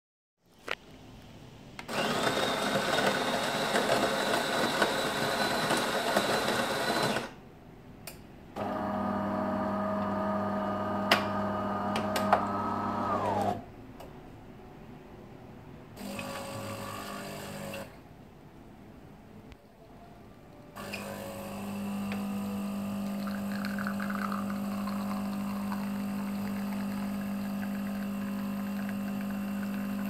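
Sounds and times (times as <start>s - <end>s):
coffee machine motor whine: 1.9s - 7.4s, 8.6s - 13.6s, 16.0s - 17.9s, 20.8s - 30.0s.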